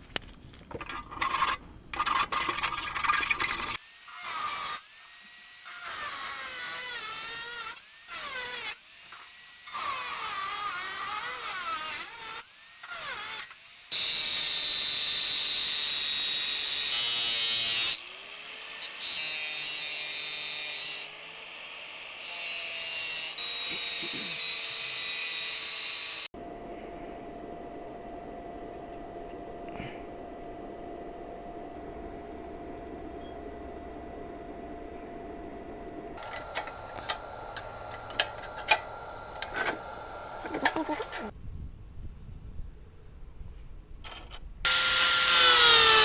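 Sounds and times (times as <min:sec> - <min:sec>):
scraping and clattering: 0:00.0 - 0:03.8, 0:36.2 - 0:41.3
electric power tool motor whining: 0:00.0 - 0:04.9, 0:36.2 - 0:41.3, 0:44.7 - 0:46.0.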